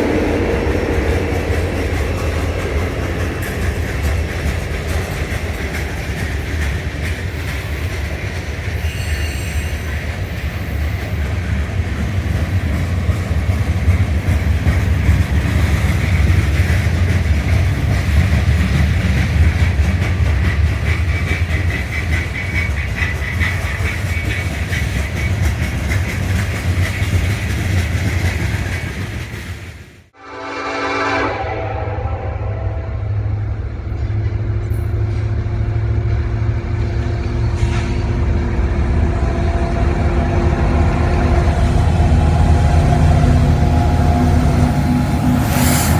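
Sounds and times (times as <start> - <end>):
freight train rumbling past: 0.0 - 45.9
wheel squeal: 8.7 - 10.9.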